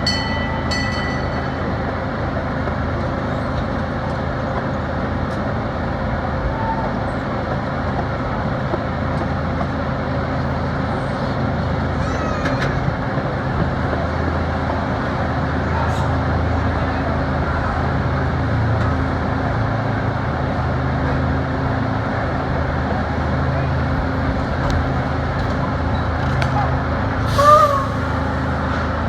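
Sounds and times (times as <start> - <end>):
moving train rumble: 21.7 - 29.0.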